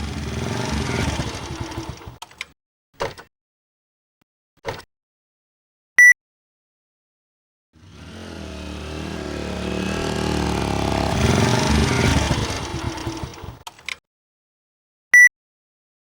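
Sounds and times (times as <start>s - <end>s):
motorcycle engine running: 0.0s - 2.2s, 7.8s - 13.6s.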